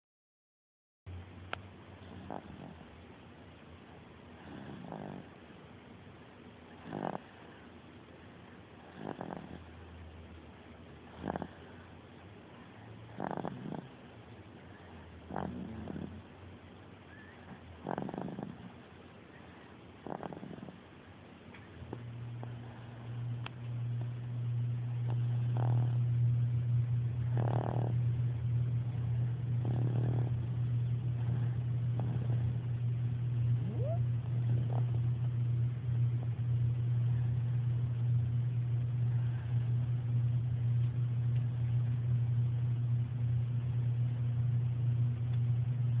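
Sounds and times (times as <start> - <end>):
baby snoring: 2.0 - 2.8, 4.4 - 5.4, 6.8 - 7.5, 8.8 - 9.8, 11.1 - 11.8, 13.1 - 14.0, 15.2 - 16.3, 17.1 - 18.8, 20.0 - 20.8, 25.1 - 26.1, 27.2 - 28.1, 29.5 - 32.8, 33.6 - 35.1.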